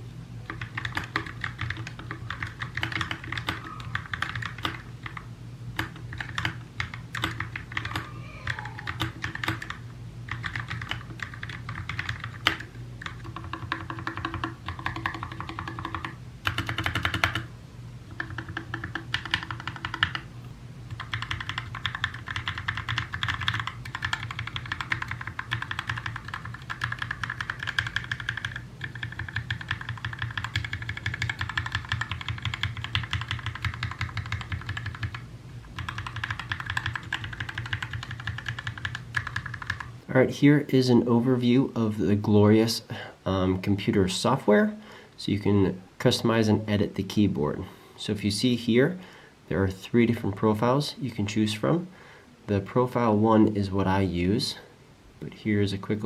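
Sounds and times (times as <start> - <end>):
mechanical keyboard typing: 0.5 - 5.2, 5.8 - 17.5, 18.1 - 20.2, 20.9 - 35.2, 35.8 - 39.9.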